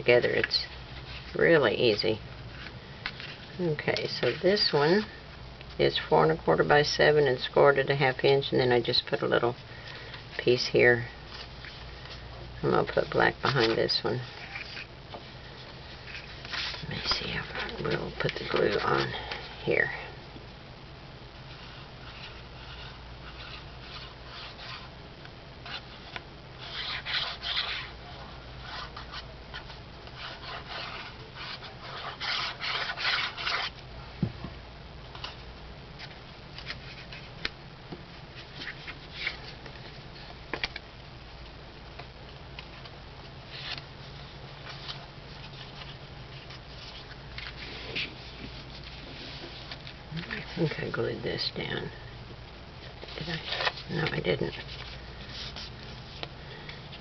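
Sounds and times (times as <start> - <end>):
paper rustling and scraping: 0.2 - 5.2, 12.8 - 19.6, 21.5 - 24.9, 25.6 - 33.8, 35.1 - 37.5, 38.3 - 40.8, 43.5 - 50.9, 52.9 - 56.3.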